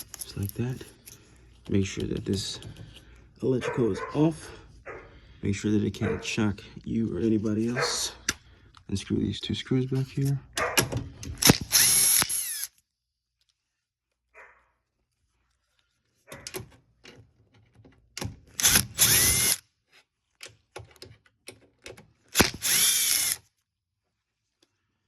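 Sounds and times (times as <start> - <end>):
power drill motor whining: 11.4 - 12.8, 18.6 - 19.6, 22.3 - 23.4.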